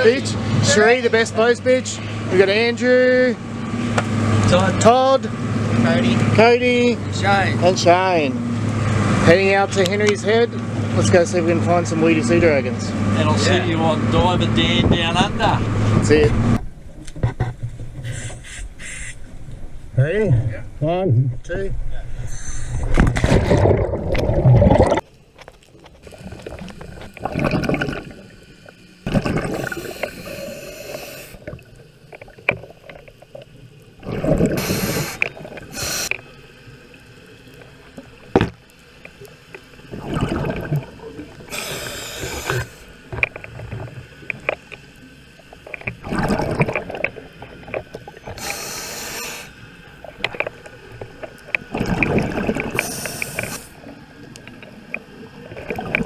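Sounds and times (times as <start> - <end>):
regulator inhale hiss: 18.0 - 19.2, 22.2 - 22.9, 29.5 - 31.4, 34.6 - 36.2, 41.5 - 43.0, 48.4 - 49.6, 52.8 - 53.8
exhaust bubbles: 22.1 - 56.0.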